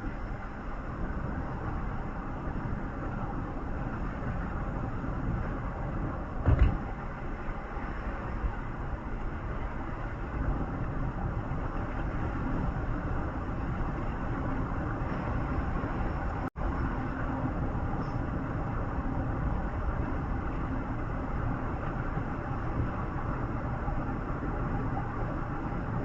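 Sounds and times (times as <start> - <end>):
vehicle engine and tyres rumbling: 0.0 - 26.0
loud thump: 6.4 - 6.9.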